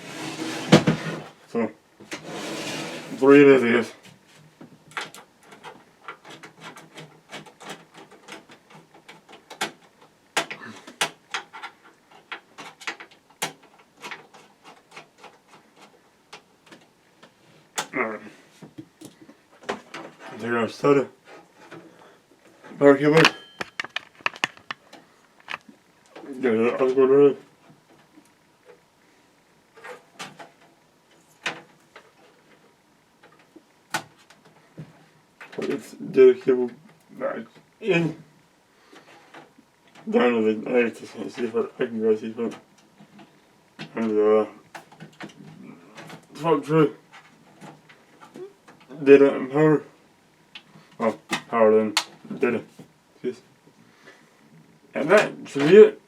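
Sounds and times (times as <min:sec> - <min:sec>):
hands clicking cables and connectors: 0:04.9 - 0:16.9, 0:23.6 - 0:25.7, 0:51.3 - 0:52.2
screwdriver clicks and metallic knocks: 0:23.2 - 0:24.8.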